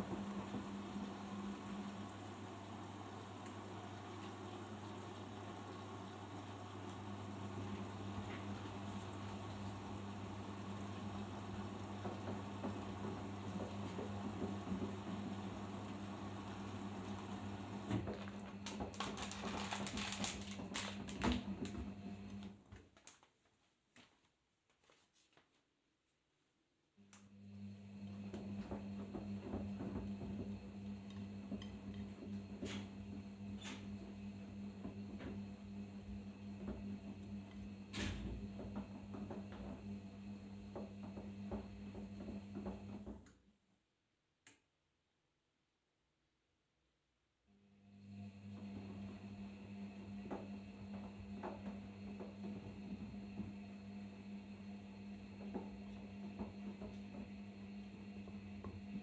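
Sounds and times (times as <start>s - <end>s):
washing machine hum: 0.0s - 23.2s, 27.0s - 43.6s, 47.5s - 59.0s
wet laundry knocking in drum: 11.5s - 15.6s, 38.3s - 39.9s, 40.7s - 43.2s.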